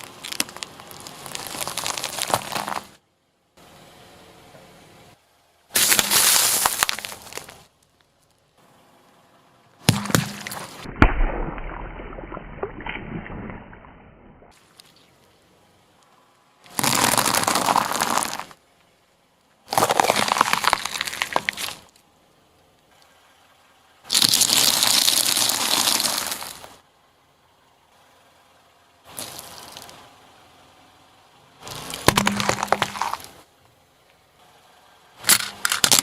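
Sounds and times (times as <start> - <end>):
objects crunching under a tyre: 0.0 - 3.0, 5.7 - 8.5, 9.8 - 13.8, 16.6 - 18.6, 19.6 - 22.1, 24.1 - 26.8, 29.1 - 30.1, 31.6 - 33.5, 35.2 - 36.0
sharp crack: 5.8 - 7.7, 9.8 - 15.0.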